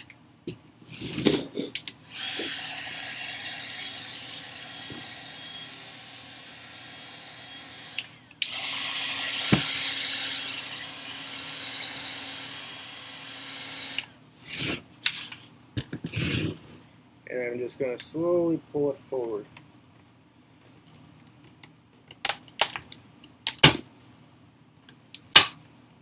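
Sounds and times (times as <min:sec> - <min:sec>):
heat gun fan hissing: 0:02.0 - 0:14.1.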